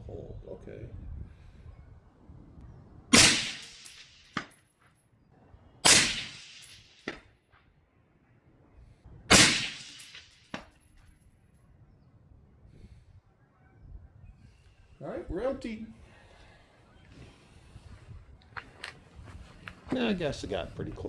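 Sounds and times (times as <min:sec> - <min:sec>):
suppressed rifle shots: 0:03.1 - 0:04.4, 0:05.8 - 0:07.2, 0:09.3 - 0:10.7.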